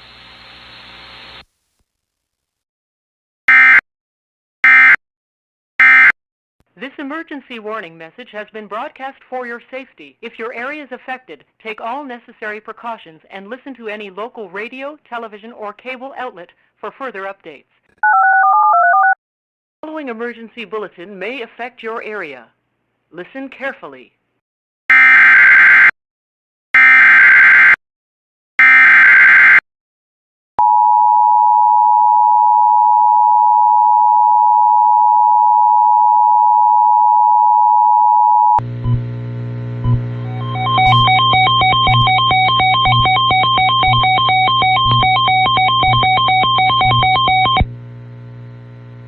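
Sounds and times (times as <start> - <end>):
electronic music with beat: 40.3 - 47.7
screeching digital data bursts: 40.3 - 47.7
two-tone attention signal: 40.3 - 47.7.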